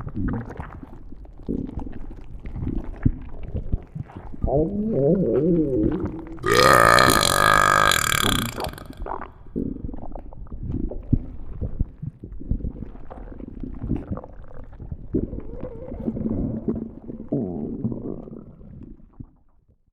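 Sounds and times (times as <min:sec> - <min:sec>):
stomach growling and gurgling: 0:04.4 - 0:09.1.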